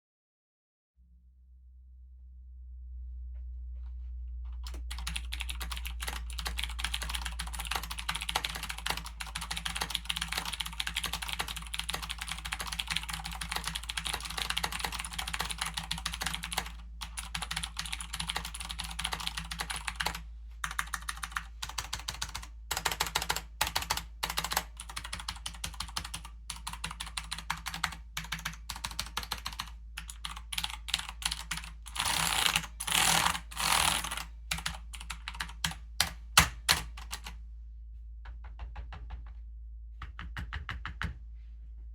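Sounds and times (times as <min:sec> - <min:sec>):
clicky mechanical keyboard typing: 0:04.6 - 0:37.4.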